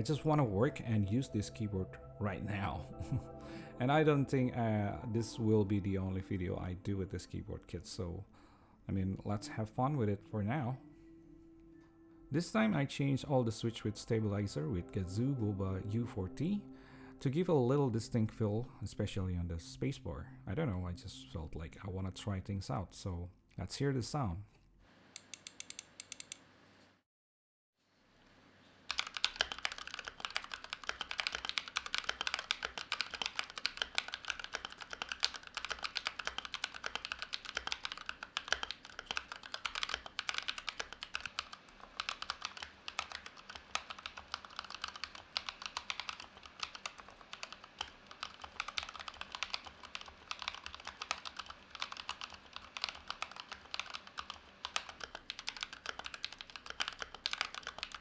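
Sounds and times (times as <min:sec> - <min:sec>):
mechanical keyboard typing: 0:25.2 - 0:26.4, 0:28.9 - 0:58.0.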